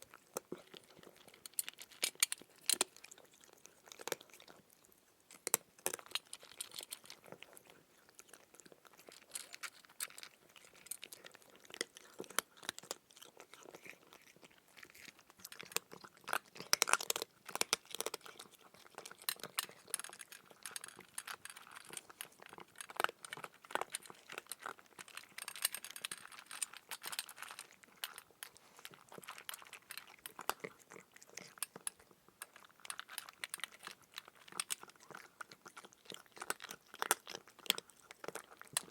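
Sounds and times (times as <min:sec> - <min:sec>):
chewing crunchy food: 0:00.0 - 0:38.9.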